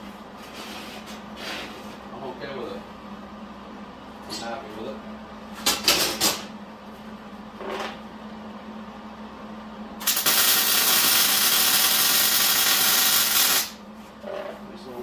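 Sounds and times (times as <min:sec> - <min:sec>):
welding arc hissing: 0:10.0 - 0:13.8.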